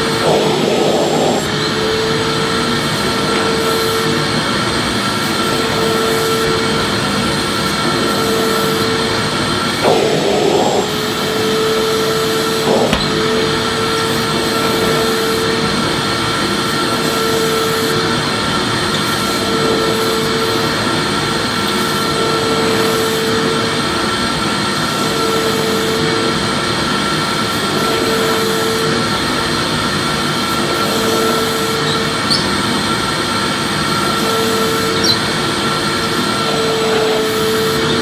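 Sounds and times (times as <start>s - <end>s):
vacuum cleaner running: 0.0s - 38.0s.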